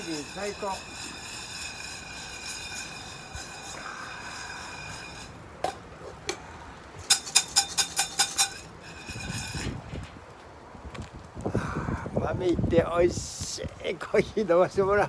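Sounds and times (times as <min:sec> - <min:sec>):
metal cookware clinking: 0:00.0 - 0:09.8.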